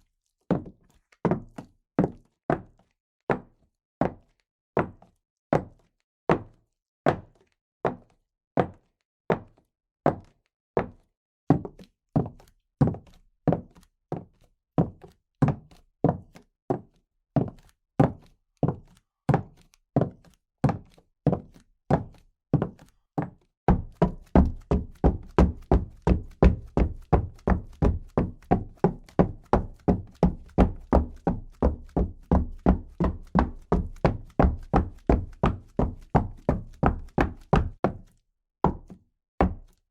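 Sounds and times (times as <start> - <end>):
footsteps on hard surface: 23.7 - 37.8.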